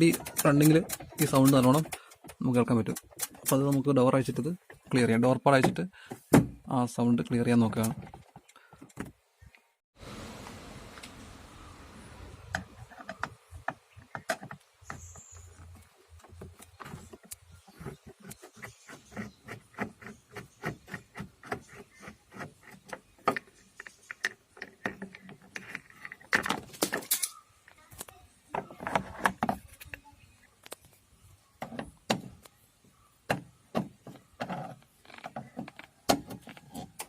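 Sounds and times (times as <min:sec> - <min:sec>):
small clicks and knocks: 0:12.5 - 0:31.0
door panel scraping and rattling: 0:33.3 - 0:37.0.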